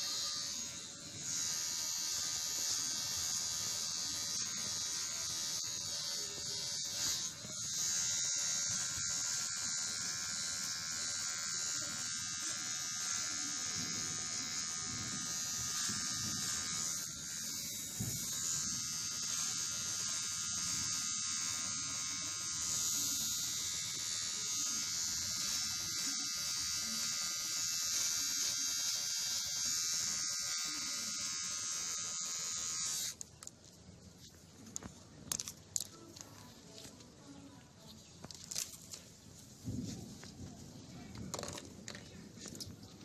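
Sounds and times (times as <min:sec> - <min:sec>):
electric hair clipper buzzing: 0:00.0 - 0:33.2.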